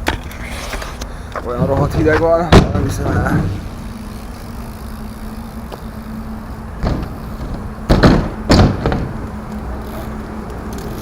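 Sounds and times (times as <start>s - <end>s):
hard thuds and knocks: 6.8s - 9.2s.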